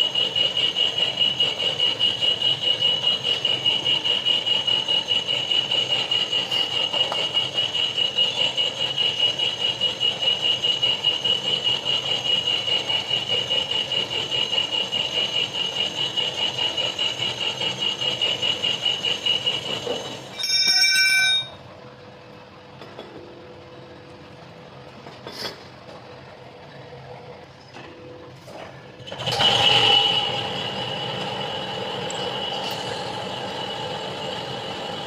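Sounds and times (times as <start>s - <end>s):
metal-cutting tool squealing: 0.0s - 21.6s, 32.0s - 33.5s
brief harsh tone: 20.3s - 21.6s.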